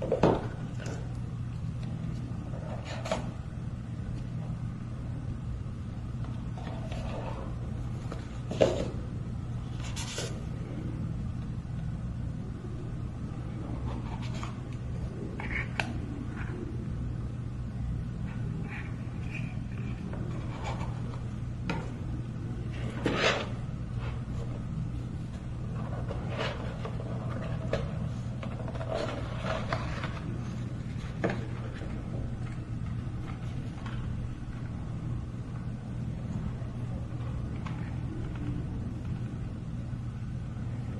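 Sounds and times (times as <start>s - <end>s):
steady low hum: 0.0s - 40.9s.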